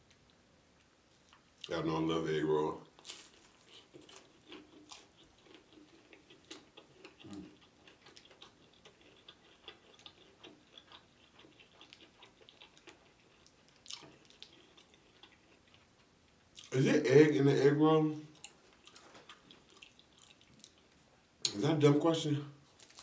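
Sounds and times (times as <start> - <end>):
chewing crisp food: 0.1 - 1.7, 2.8 - 16.8, 18.3 - 21.6, 22.6 - 23.0.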